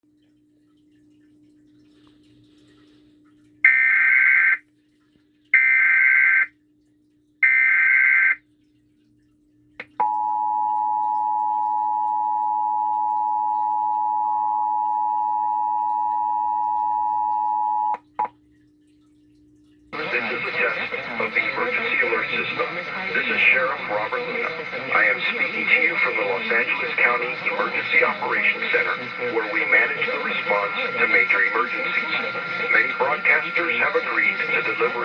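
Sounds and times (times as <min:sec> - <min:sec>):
two-tone attention signal: 0:10.0 - 0:18.0, 0:20.0 - 0:35.0
data tone bursts: 0:20.0 - 0:35.0.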